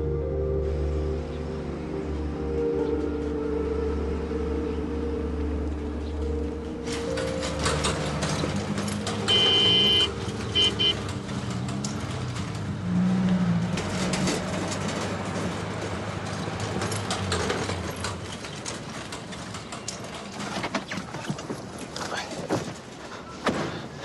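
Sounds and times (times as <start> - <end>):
street traffic noise: 0.0 - 24.0
vehicle horn honking: 9.2 - 11.1.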